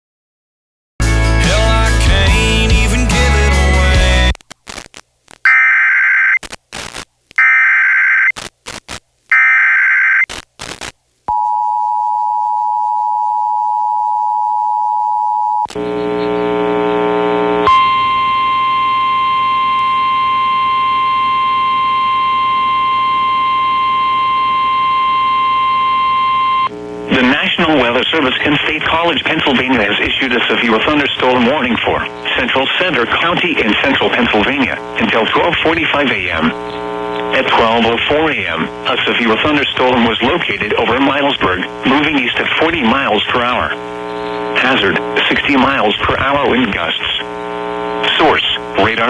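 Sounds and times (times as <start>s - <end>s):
warbling data screech: 5.5s - 6.4s, 7.4s - 8.3s, 9.3s - 10.3s
long steady alarm tone: 17.4s - 26.7s
brief buzzy tone: 17.6s - 26.7s
two-tone attention signal: 17.6s - 26.7s.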